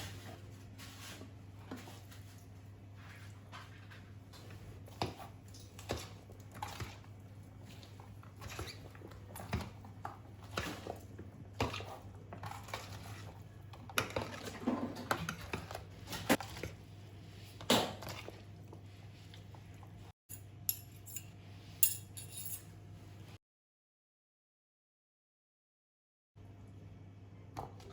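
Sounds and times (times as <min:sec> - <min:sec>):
dishes and cutlery clinking: 0:20.3 - 0:22.7.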